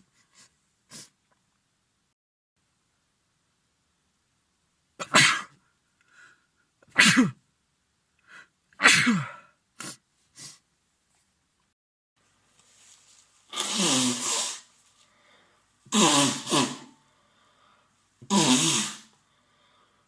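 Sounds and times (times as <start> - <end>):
man sniffing: 0.0 - 1.2, 8.2 - 10.6, 13.5 - 20.0
man sneezing: 5.0 - 5.6, 6.9 - 7.4, 8.8 - 10.6, 13.5 - 14.7, 15.9 - 17.0, 18.2 - 19.1.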